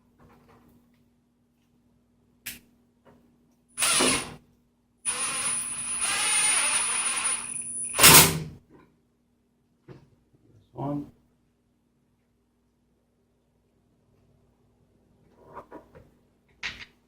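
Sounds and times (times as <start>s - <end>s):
cordless drill driving screws: 3.8s - 4.3s, 5.1s - 8.2s.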